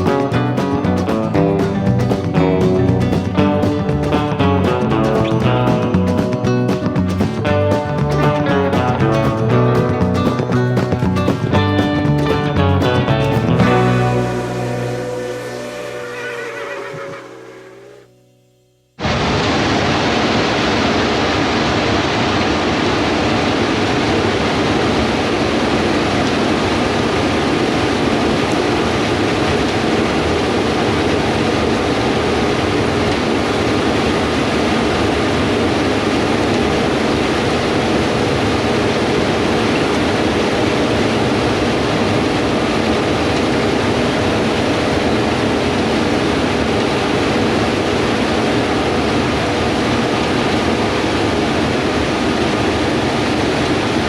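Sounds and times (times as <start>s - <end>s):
diesel farm machinery running: 0.0s - 18.0s.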